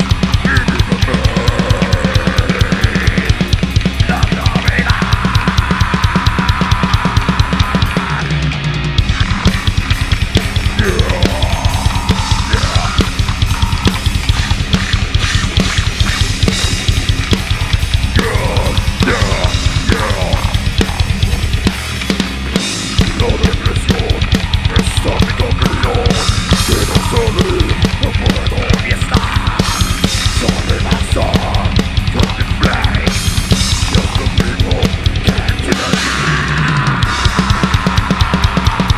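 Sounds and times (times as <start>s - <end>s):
distorted electric guitars: 0.0s - 38.9s
fast metal drumming: 0.0s - 38.9s
sliding high guitar notes: 7.0s - 38.9s.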